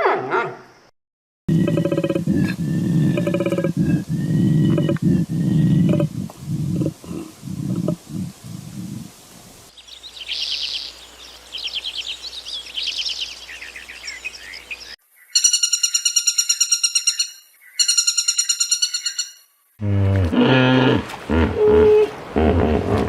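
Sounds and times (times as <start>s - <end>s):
low animal growl: 1.5s - 9.1s, 19.8s - 23.0s
birds chirping and twittering: 1.5s - 19.8s.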